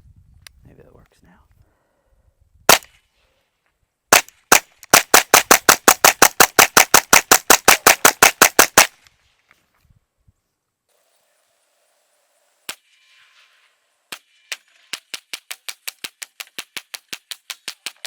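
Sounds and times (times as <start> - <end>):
gunshots in rapid succession: 4.1 - 9.0.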